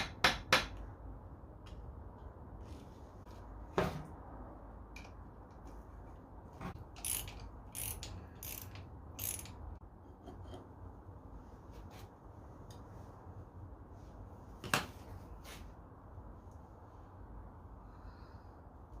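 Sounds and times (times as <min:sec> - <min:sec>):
socket ratchet clicking: 0:06.8 - 0:09.7.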